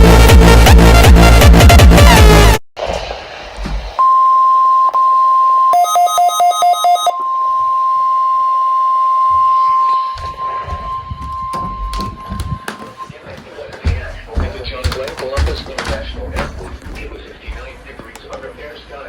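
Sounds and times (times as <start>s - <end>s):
short two-pitch beeps: 4.0s - 12.7s
steady high alarm tone: 4.0s - 13.2s.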